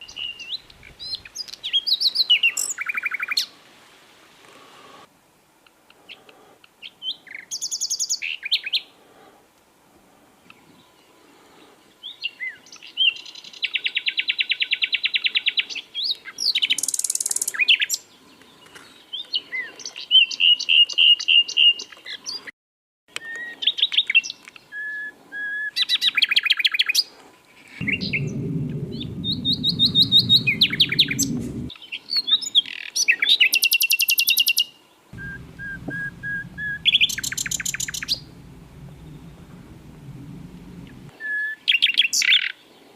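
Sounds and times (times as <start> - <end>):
low rumbling noise: 27.8 - 31.7, 35.2 - 41.1.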